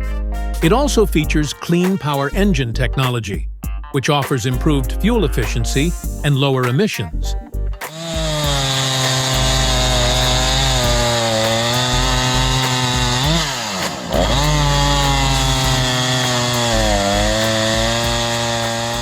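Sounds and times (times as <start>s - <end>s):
chainsaw cutting wood: 7.8s - 19.0s.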